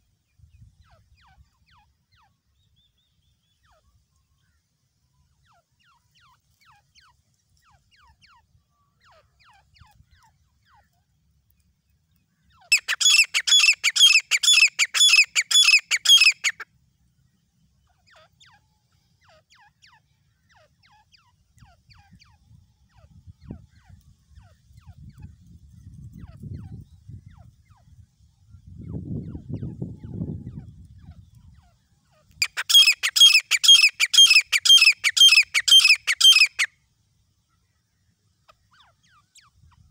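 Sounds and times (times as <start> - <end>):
francolin calling: 12.6 - 16.6, 32.2 - 36.7.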